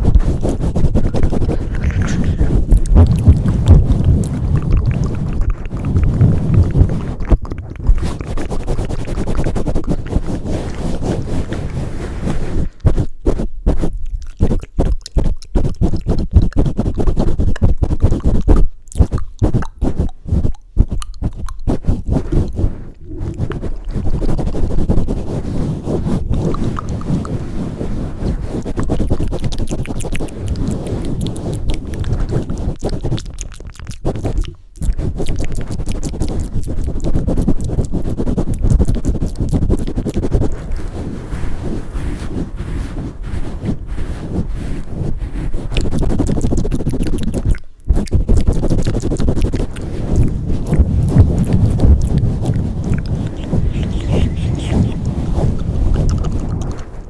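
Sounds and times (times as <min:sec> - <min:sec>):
muffled low rumble: 0:00.0 - 0:13.4, 0:48.2 - 0:57.0
scratchy clicks and rubbing: 0:00.0 - 0:57.0.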